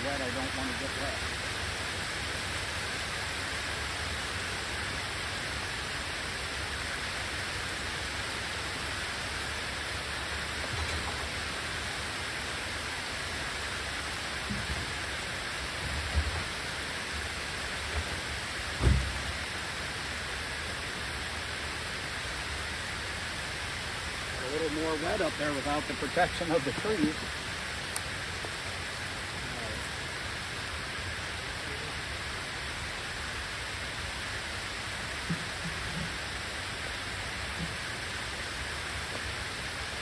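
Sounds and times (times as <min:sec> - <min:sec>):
steady rain hiss: 0:00.0 - 0:40.0.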